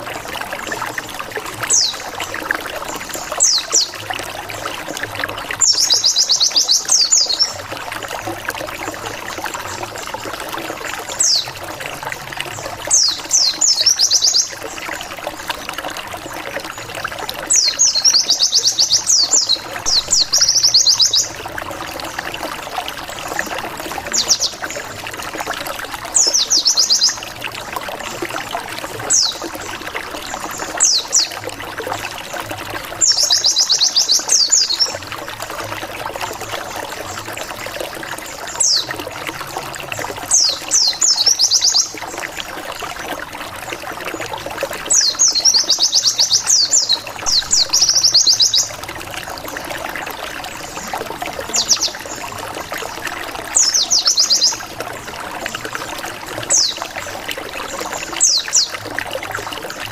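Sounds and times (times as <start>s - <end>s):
high rapid birdsong: 44.9s - 48.7s.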